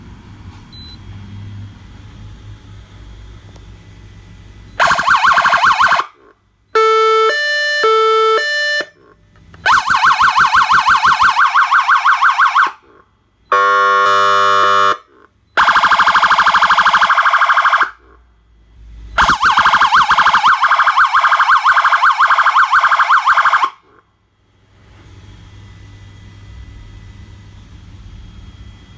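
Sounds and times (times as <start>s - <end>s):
low steady rumble: 0.0s - 7.2s, 14.2s - 28.9s
electronic siren warbling: 4.8s - 6.2s, 9.6s - 12.8s, 15.6s - 18.1s, 19.2s - 23.8s
steady horn blast: 13.5s - 15.1s.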